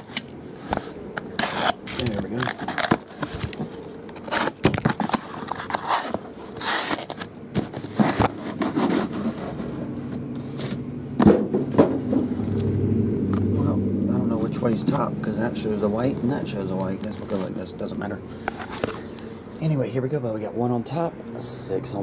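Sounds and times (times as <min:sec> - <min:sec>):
packaging scraping and crinkling: 0:00.0 - 0:10.9, 0:16.7 - 0:19.2.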